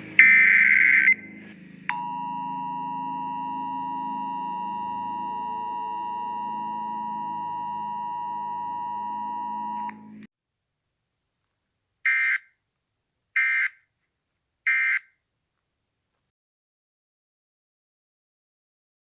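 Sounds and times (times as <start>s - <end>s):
two-tone alert signal: 0.2s - 10.0s.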